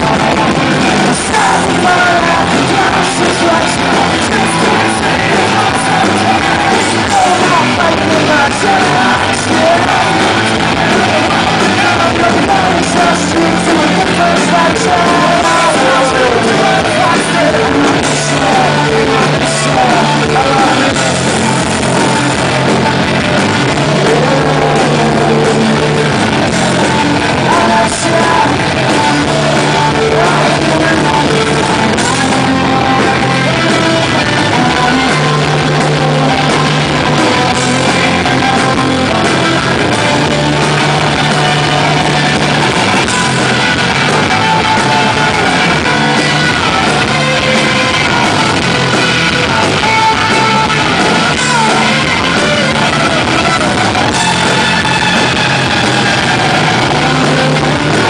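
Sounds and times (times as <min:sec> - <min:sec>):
bass guitar: 0:00.0 - 0:58.0
distorted guitars: 0:00.0 - 0:58.0
drums: 0:00.0 - 0:58.0
person singing: 0:00.0 - 0:58.0.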